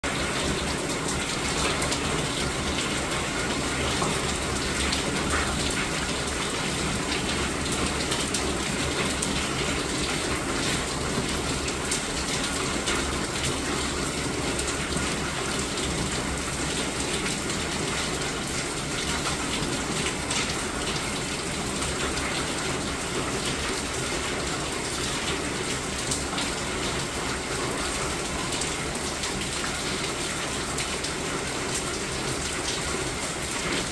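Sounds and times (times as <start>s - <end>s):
steady rain falling: 0.0s - 33.9s.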